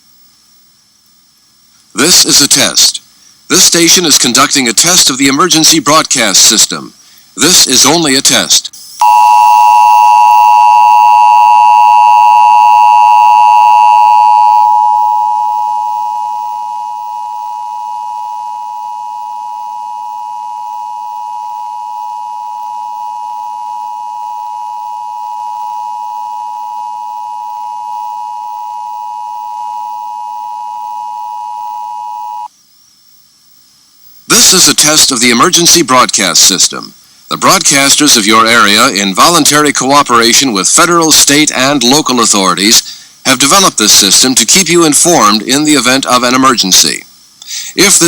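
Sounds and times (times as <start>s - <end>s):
buzzing two-tone attention signal: 9.0s - 32.5s.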